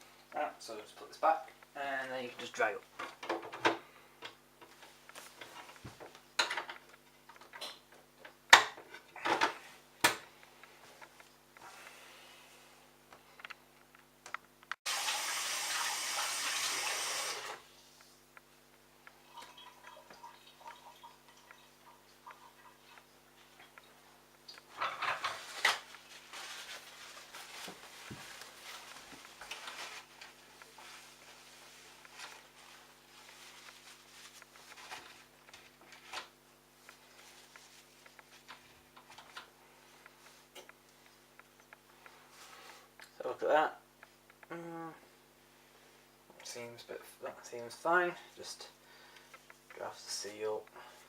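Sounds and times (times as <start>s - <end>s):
faint steady hum: 0.0s - 51.0s
soft rubbing: 25.4s - 35.3s, 36.8s - 38.5s.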